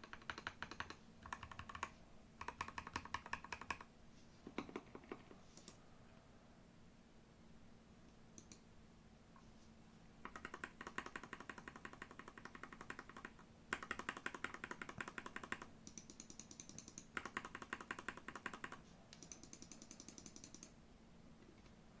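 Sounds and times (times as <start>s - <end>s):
mechanical keyboard typing: 0.0s - 3.9s, 10.2s - 20.8s.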